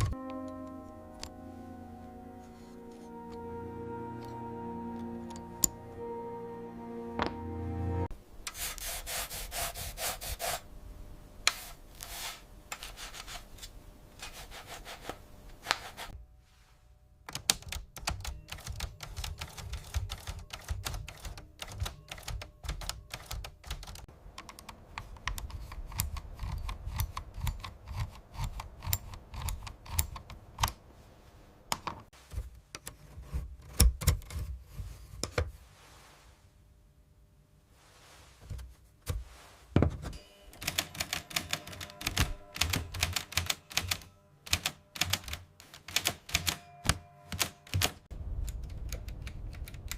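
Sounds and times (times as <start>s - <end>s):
manual typewriter clacking: 17.3s - 30.8s, 40.5s - 49.9s.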